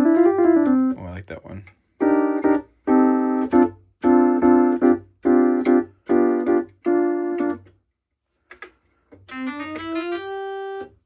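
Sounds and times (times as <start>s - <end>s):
electronic keyboard notes: 0.0s - 1.0s, 2.0s - 7.7s, 9.2s - 11.0s.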